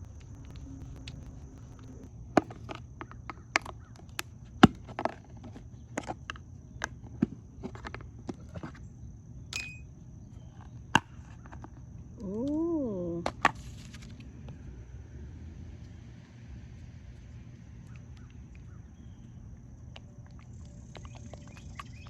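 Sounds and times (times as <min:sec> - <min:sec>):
faint high whine: 0:00.0 - 0:03.4, 0:09.5 - 0:10.3.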